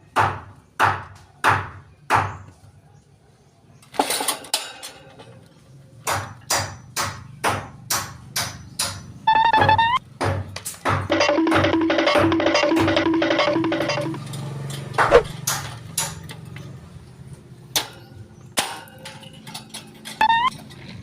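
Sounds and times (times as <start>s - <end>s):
sharp knocks: 6.1s - 14.2s.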